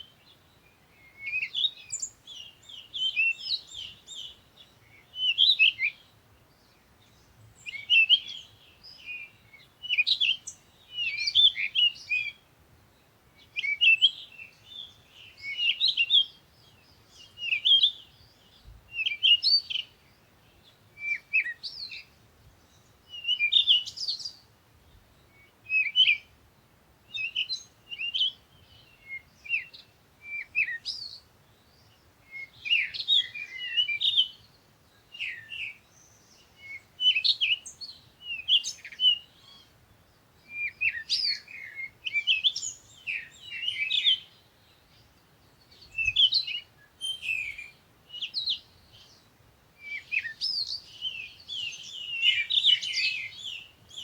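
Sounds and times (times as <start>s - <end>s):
small songbirds chirping: 0.0s - 54.0s.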